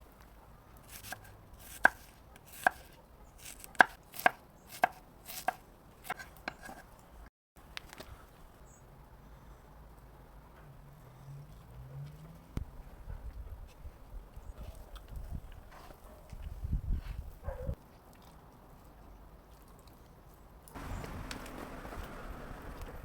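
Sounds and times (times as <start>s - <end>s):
knife chopping on cutting board: 0.9s - 6.8s.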